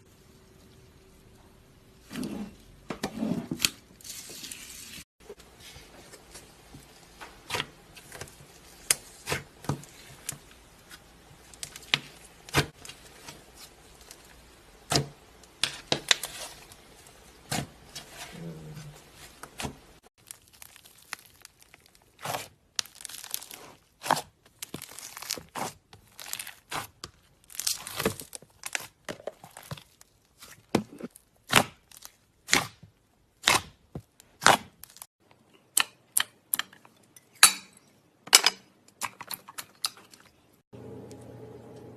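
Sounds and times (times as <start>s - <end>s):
slime popping and crackling: 20.2s - 30.5s.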